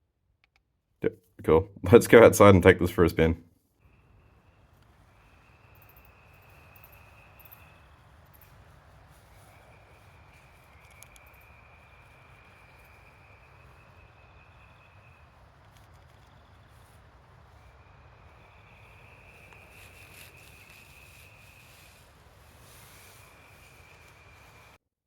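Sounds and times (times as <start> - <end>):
crickets trilling: 3.8 - 24.8
faint clicks: 4.7 - 13.1, 14.4 - 17.1.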